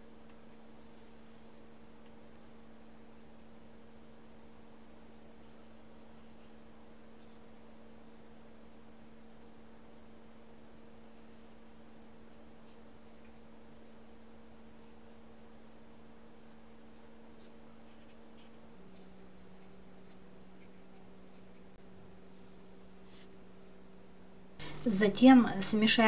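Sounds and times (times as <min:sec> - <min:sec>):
steady low hum: 0:00.0 - 0:26.0
paintbrush scratching on paper: 0:00.3 - 0:02.1, 0:03.1 - 0:08.5, 0:09.9 - 0:14.1, 0:14.8 - 0:23.8.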